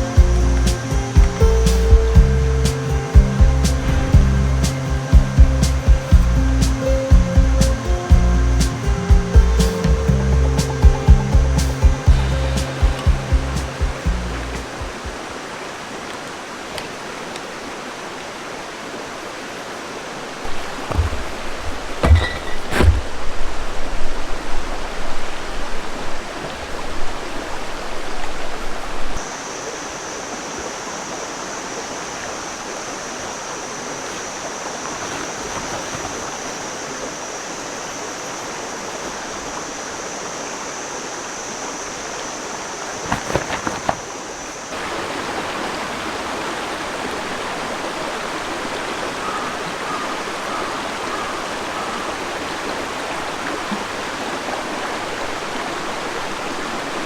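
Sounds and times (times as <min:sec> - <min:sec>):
high-pitched whine: 0:00.0 - 0:14.7
low rumbling: 0:00.0 - 0:15.0
river water rushing: 0:00.0 - 0:57.0.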